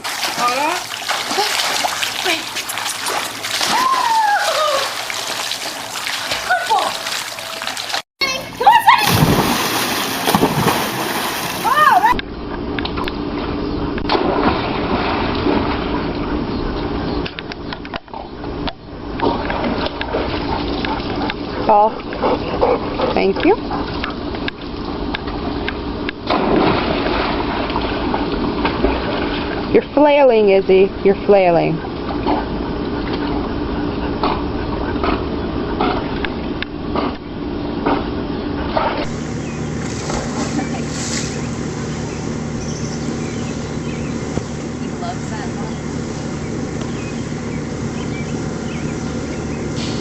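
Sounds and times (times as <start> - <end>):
water splashing in pool: 0.0 - 12.2, 26.3 - 29.8
faint steady hum: 0.0 - 50.0.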